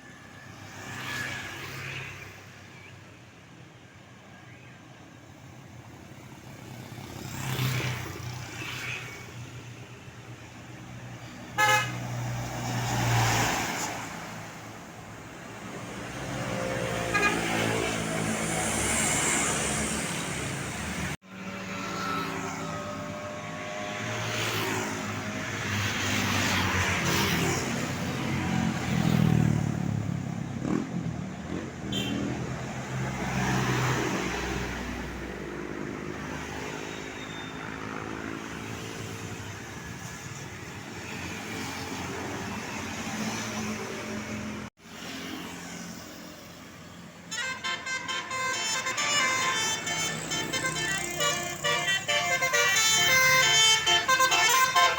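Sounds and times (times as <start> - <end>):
vehicles passing: 0.0 - 54.9
multi-tone bus air horns: 11.6 - 12.1, 17.0 - 18.0, 31.9 - 32.3, 47.3 - 54.9.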